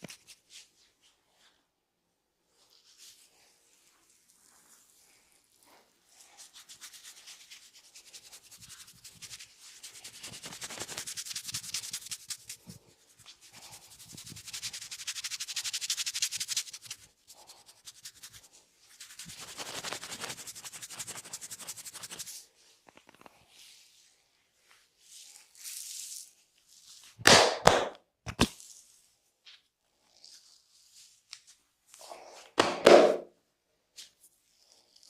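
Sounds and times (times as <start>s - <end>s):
hands rubbing skin and hair: 0.0s - 1.6s, 2.5s - 24.0s, 30.1s - 33.3s.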